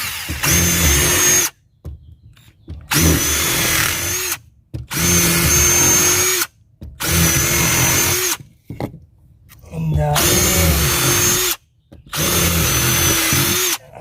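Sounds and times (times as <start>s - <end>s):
impact driver motor whine: 0.0s - 1.5s, 2.9s - 8.4s, 10.1s - 13.8s.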